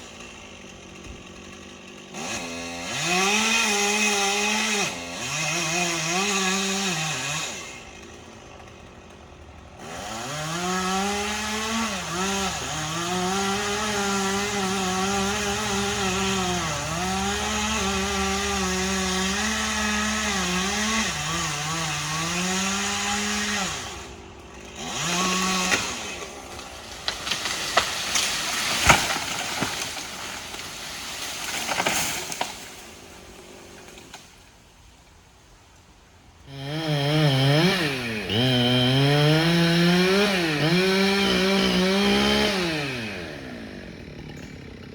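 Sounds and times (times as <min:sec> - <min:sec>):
chainsaw cutting wood: 0:00.0 - 0:44.9
wood cracking and knocking: 0:26.5 - 0:32.6.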